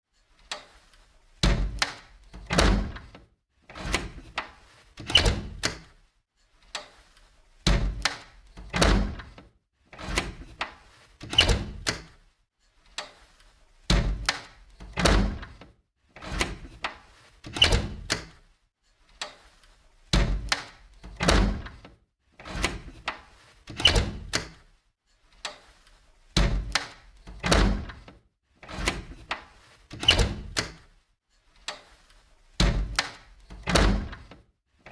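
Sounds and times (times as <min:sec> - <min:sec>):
old window opening and closing: 0:00.5 - 0:05.9, 0:07.7 - 0:12.2, 0:13.9 - 0:18.4, 0:20.1 - 0:24.6, 0:26.4 - 0:30.9, 0:32.6 - 0:34.9.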